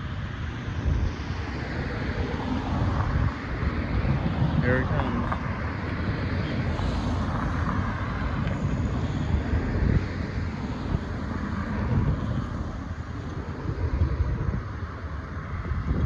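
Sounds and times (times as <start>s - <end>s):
diesel locomotive rumble: 0.0s - 16.0s.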